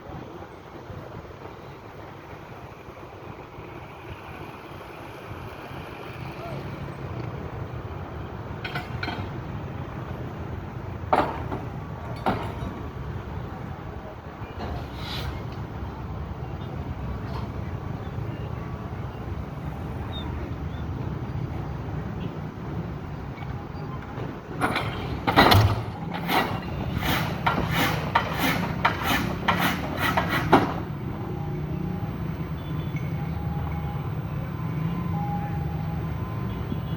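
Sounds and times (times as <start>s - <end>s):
excavator engine running: 0.8s - 36.9s
excavator bucket knocking piles: 11.0s - 13.1s, 24.0s - 31.0s.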